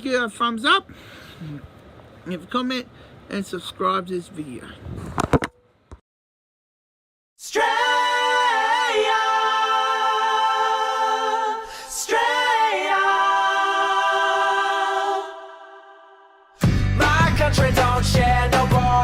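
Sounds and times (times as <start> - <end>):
voices singing in close harmony: 7.4 - 19.0.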